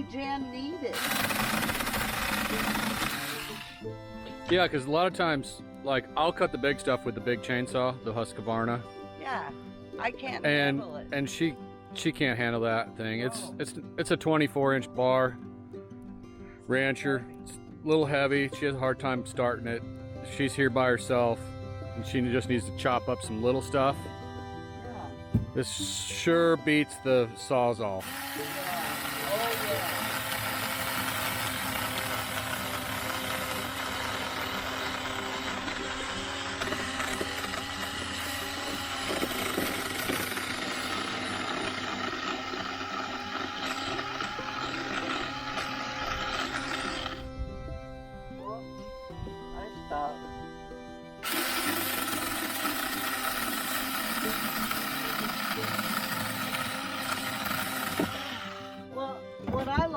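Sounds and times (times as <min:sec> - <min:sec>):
chainsaw cutting wood: 0:00.0 - 0:05.3, 0:18.6 - 0:47.4, 0:50.2 - 0:59.9.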